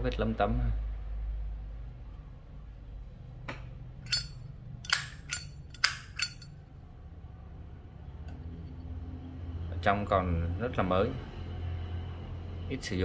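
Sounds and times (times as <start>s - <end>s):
lighter lid metallic clicks: 4.1s - 6.5s.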